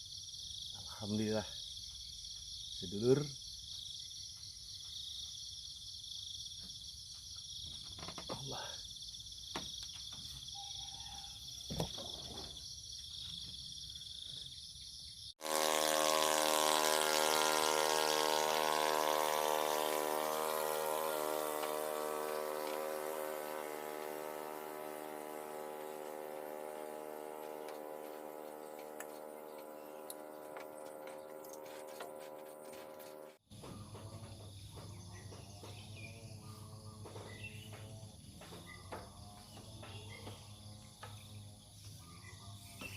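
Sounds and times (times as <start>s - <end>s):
crickets chirring: 0.0s - 15.4s
loud sustained tone: 15.4s - 33.4s.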